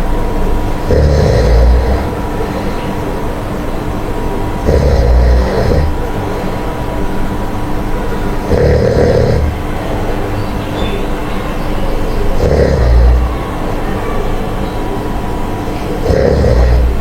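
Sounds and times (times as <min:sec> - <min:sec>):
person snoring: 0:00.8 - 0:03.0, 0:04.6 - 0:06.0, 0:08.5 - 0:09.6, 0:12.4 - 0:13.3, 0:16.0 - 0:17.0.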